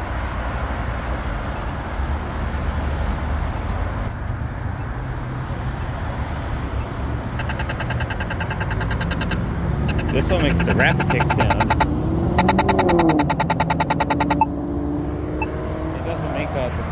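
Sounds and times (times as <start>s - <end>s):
road traffic rumbling: 0.0s - 16.9s
pedestrian button rapid ticking: 7.3s - 14.5s.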